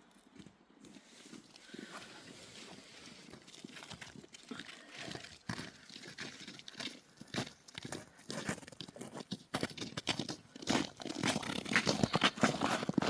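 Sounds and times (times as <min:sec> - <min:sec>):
footsteps crunching through snow: 0:00.8 - 0:13.0.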